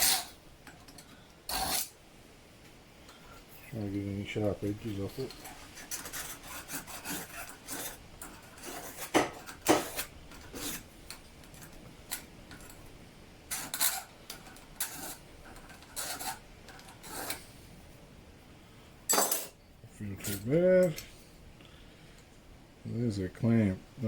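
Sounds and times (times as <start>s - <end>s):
file scraping metal: 0.0s - 0.4s, 1.5s - 2.0s, 4.6s - 10.9s, 13.5s - 17.5s.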